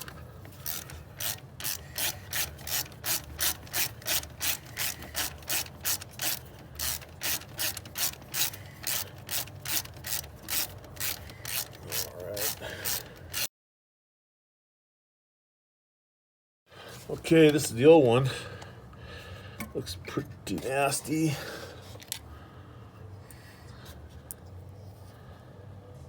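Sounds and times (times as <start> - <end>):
ratchet wrench clicking: 0.0 - 13.5.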